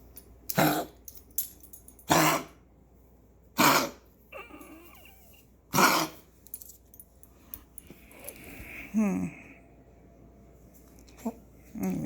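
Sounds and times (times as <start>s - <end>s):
pet coughing: 3.6s - 4.5s, 5.7s - 6.2s.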